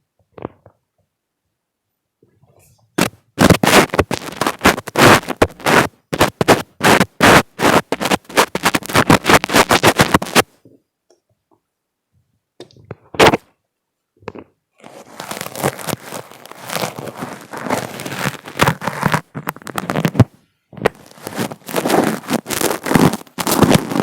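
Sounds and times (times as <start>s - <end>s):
soft rustling: 2.2s - 10.5s, 14.8s - 24.0s
fingers scratching a microphone: 2.4s - 10.6s, 12.7s - 13.5s, 14.3s - 24.0s.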